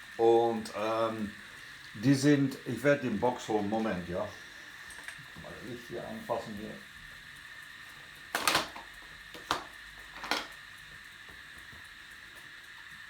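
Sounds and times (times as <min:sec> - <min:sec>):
objects knocking and clacking: 0:08.3 - 0:10.6.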